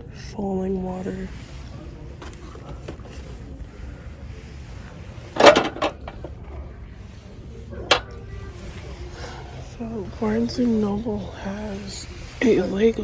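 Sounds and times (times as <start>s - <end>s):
low background hum: 0.0s - 13.0s
loud clatter: 5.4s - 6.2s.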